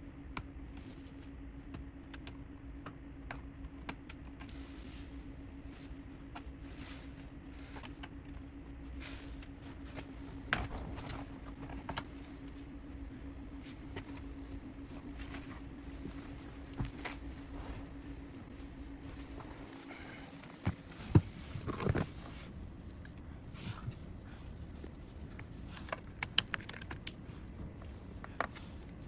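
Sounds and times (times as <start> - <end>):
steady low hum: 0.0 - 29.0
parts clicking and knocking: 25.3 - 29.0.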